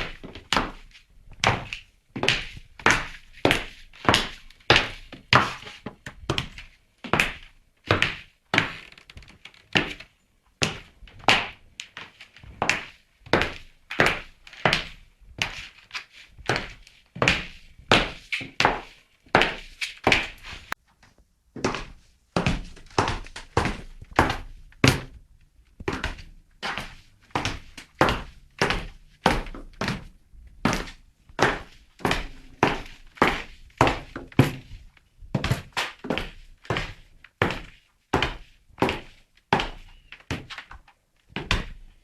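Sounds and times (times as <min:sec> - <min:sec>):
high heels clicking on hard floor: 0:25.8 - 0:40.5.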